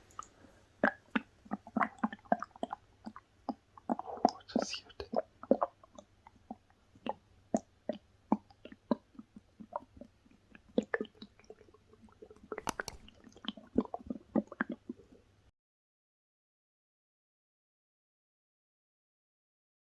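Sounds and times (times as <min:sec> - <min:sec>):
stomach gurgling: 0:00.0 - 0:15.5.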